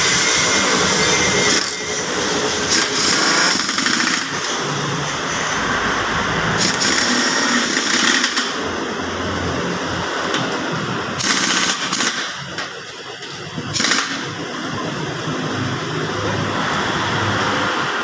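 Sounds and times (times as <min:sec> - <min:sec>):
power tool running: 0:00.0 - 0:12.8.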